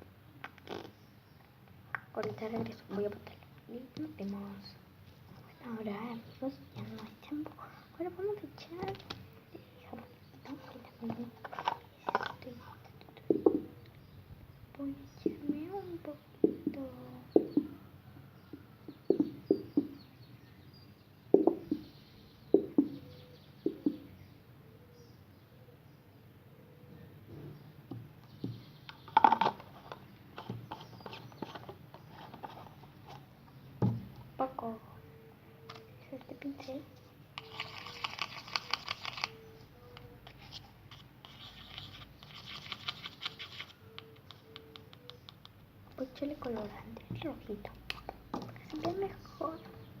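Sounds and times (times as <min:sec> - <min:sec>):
paintbrush stirring slime: 0:37.4 - 0:39.3, 0:40.2 - 0:46.8.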